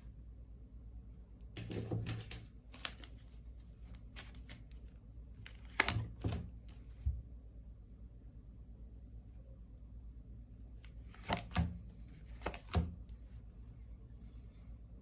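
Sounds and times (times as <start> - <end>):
cards flicking and rustling: 1.6 - 7.0, 10.8 - 13.1.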